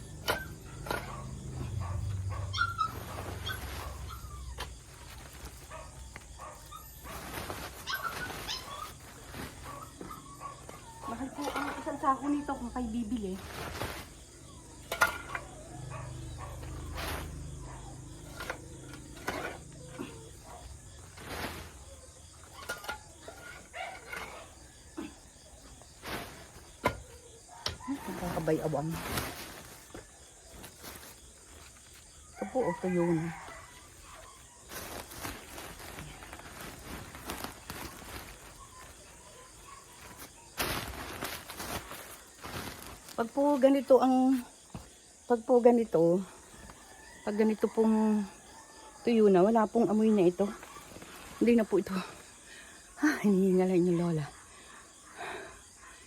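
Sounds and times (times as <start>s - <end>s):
shovel scraping dry manure: 0.0s - 44.0s
shovel scraping and knocking: 7.0s - 12.3s, 14.8s - 15.6s, 18.2s - 24.5s, 26.0s - 30.0s.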